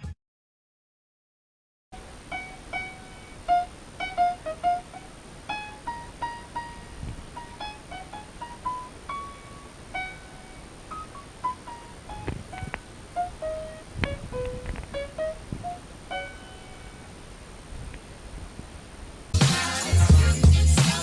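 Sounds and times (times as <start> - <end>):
keyboard melody of single notes: 2.0 - 17.5.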